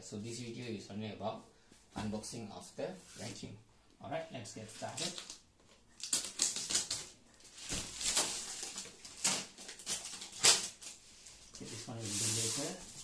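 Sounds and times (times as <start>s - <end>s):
cardboard boxes rustling and scraping: 11.6s - 13.0s.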